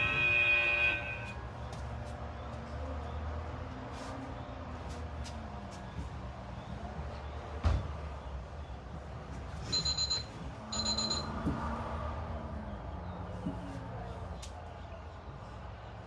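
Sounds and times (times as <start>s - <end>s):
electronic alarm beeping: 9.7s - 11.4s.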